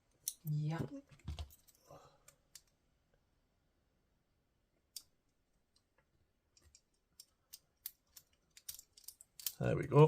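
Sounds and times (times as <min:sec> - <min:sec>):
metallic clicks in a lock: 0:06.6 - 0:09.7.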